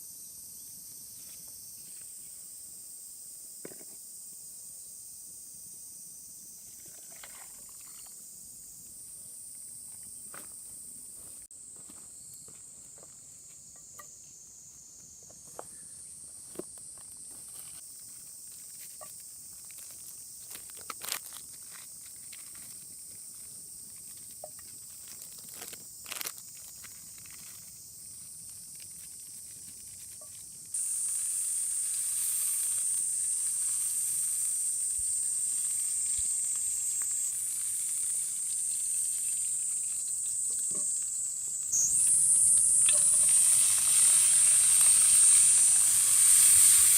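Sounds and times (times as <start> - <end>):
faint steady hiss: 0.0 - 46.9
loud sizzling in skillet: 30.7 - 46.9.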